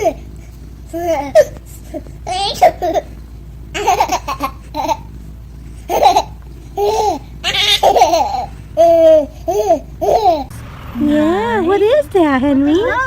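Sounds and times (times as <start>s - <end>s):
baby laughing: 0.0s - 0.3s, 0.9s - 10.5s.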